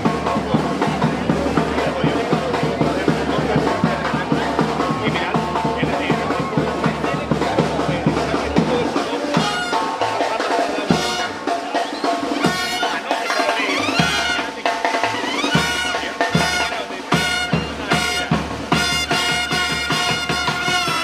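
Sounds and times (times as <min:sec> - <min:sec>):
snare and bass drums: 0:00.0 - 0:21.0
loud brass chords: 0:10.8 - 0:11.7, 0:12.4 - 0:21.0.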